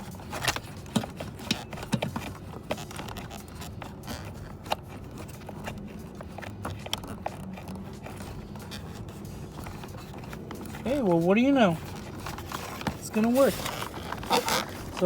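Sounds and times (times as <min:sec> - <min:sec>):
plastic clicks and knocks: 0:00.4 - 0:03.2.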